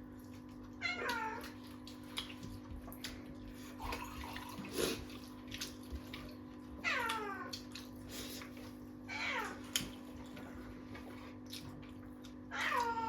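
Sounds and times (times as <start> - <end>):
cat eating noises: 0.0 - 13.0
cat meowing: 0.8 - 1.5, 6.8 - 7.5, 9.1 - 9.6, 12.5 - 13.0.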